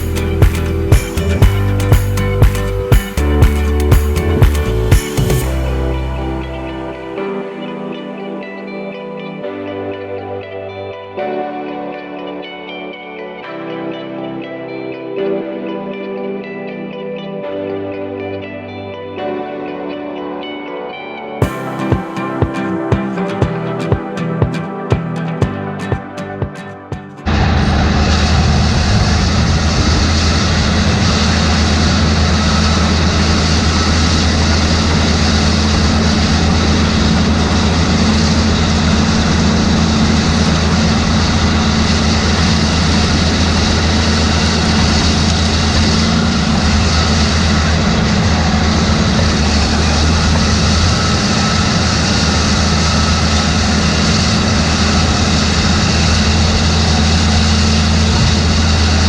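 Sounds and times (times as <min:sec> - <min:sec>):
tractor diesel engine drone: 0:27.3 - 0:59.0.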